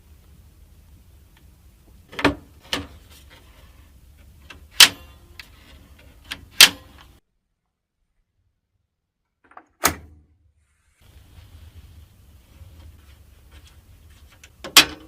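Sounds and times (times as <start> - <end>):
computer parts clicking and knocking: 4.4 - 7.2, 14.4 - 15.0.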